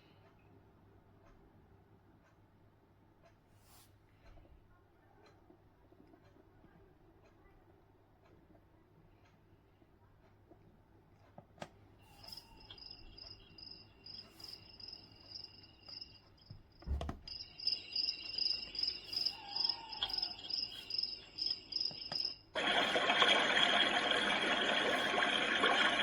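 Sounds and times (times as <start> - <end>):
crickets chirping from small speaker: 12.0 - 26.0.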